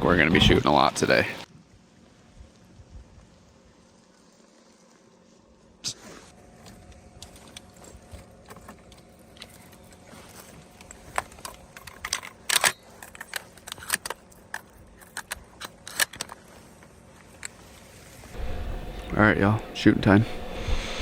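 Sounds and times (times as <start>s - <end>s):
gear clicking and rattling: 7.2s - 17.8s.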